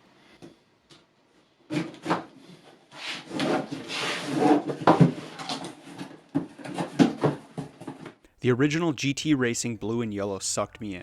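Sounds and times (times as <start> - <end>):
objects rubbing and knocking: 1.6 - 8.2.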